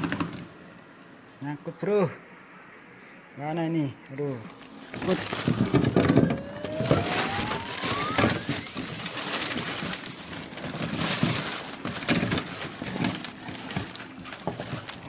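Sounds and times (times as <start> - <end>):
rising electronic tone: 5.9 - 8.9.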